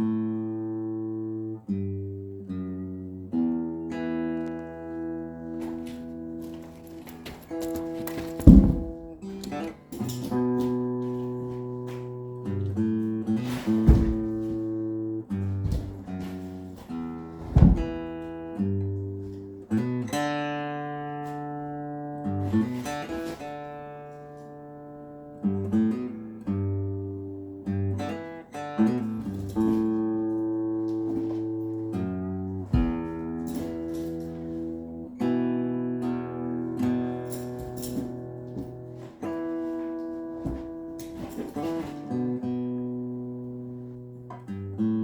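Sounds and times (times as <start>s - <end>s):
acoustic guitar music: 0.0s - 45.0s
sharp knocks: 7.7s - 9.4s, 17.5s - 18.1s.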